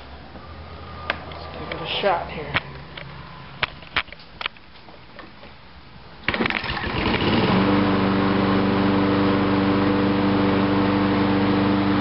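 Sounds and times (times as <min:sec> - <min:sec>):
lawn mower engine starting: 0:06.2 - 0:12.0.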